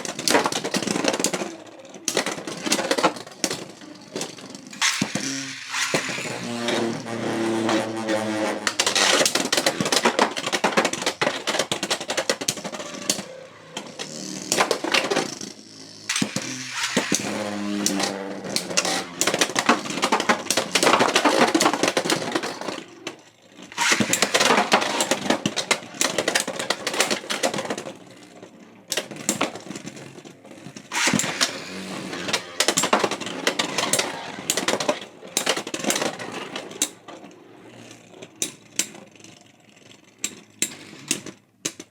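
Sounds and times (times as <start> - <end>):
spinning tops clattering: 4.7 - 6.6, 16.1 - 18.2.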